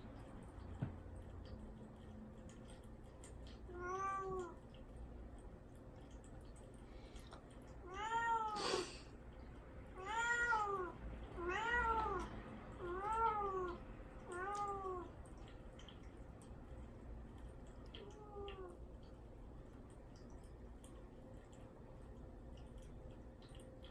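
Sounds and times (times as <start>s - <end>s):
young cat meowing: 10.0s - 15.1s.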